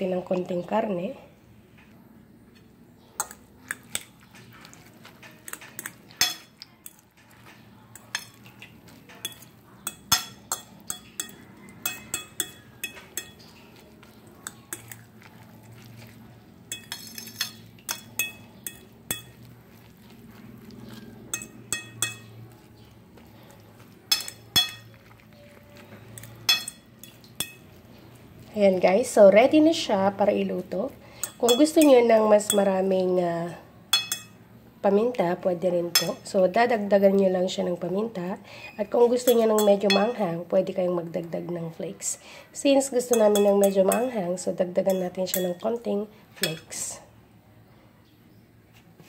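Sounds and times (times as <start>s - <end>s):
utensil clinking against bowl: 3.2s - 28.2s, 31.2s - 32.8s, 33.9s - 34.4s, 35.9s - 36.3s, 39.0s - 40.3s, 43.0s - 44.2s, 44.8s - 45.8s, 46.4s - 46.8s.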